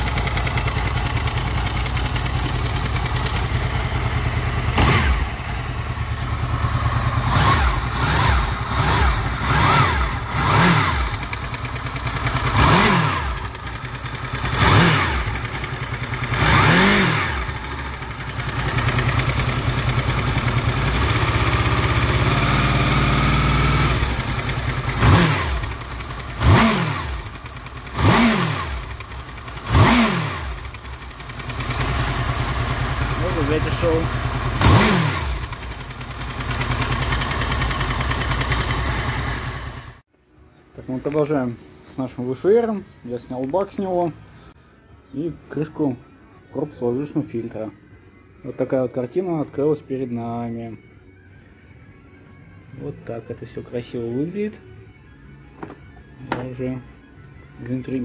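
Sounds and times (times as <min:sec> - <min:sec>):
motorcycle engine revving: 0:00.0 - 0:40.0.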